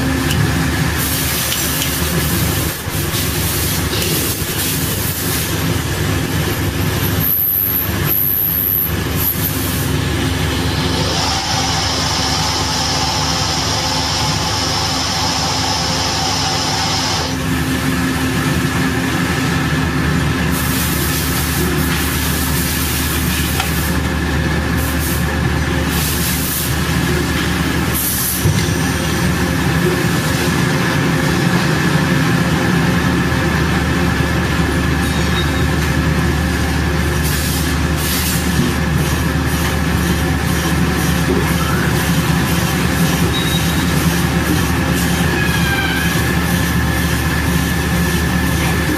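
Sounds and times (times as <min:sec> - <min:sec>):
high steady whine: 0:00.0 - 0:48.9
machine mechanical hum: 0:00.0 - 0:48.9.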